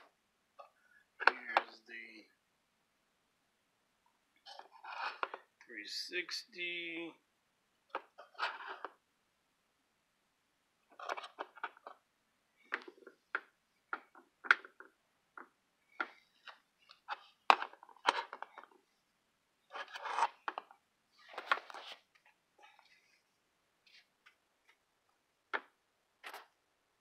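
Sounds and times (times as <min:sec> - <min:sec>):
plastic rustling and scraping: 0:19.7 - 0:23.2.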